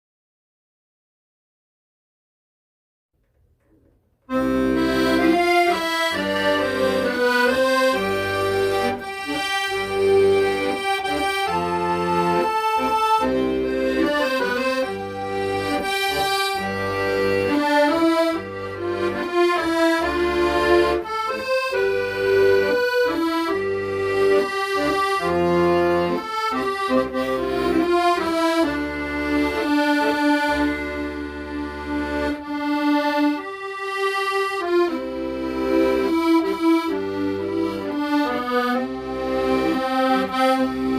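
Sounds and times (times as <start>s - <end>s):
accordion melody with bass: 4.2s - 40.9s.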